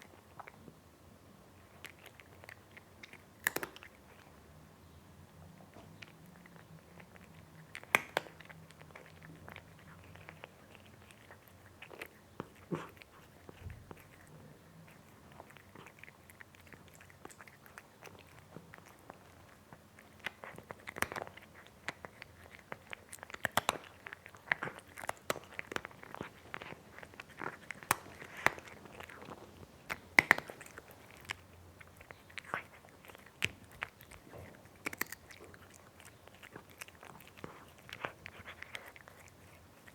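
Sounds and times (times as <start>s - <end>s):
cat crunching food: 1.6s - 4.5s, 5.5s - 39.9s.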